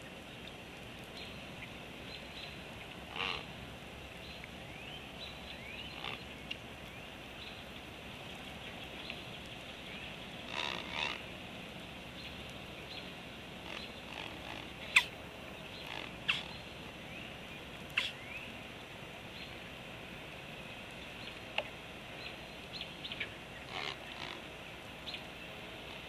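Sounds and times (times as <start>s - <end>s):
background bird chorus: 0.0s - 26.0s
young bird calls: 3.1s - 3.5s, 10.4s - 11.3s, 13.6s - 16.6s.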